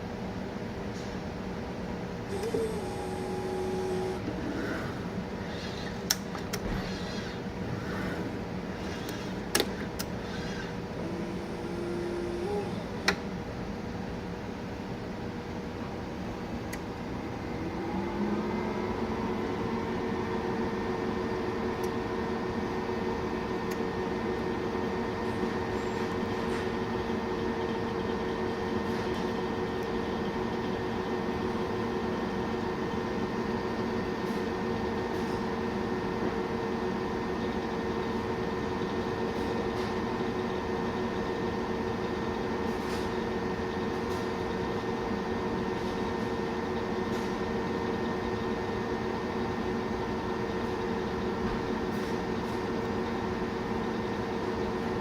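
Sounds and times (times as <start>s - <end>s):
fan hum: 0.0s - 34.0s
equipment humming: 1.9s - 13.9s
steady motor tone: 2.3s - 13.2s.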